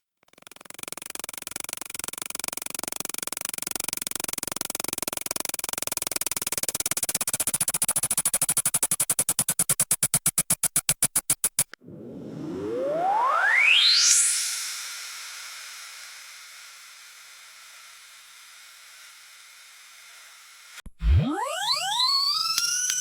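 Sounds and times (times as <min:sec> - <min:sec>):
synthesizer-like pulsing buzz: 0:20.2 - 0:22.9.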